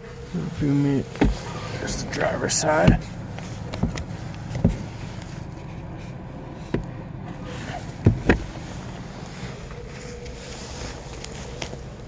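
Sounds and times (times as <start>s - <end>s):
low outdoor rumble: 0.0s - 12.0s
dull knocks: 1.2s - 2.0s, 2.8s - 5.0s, 7.9s - 8.6s.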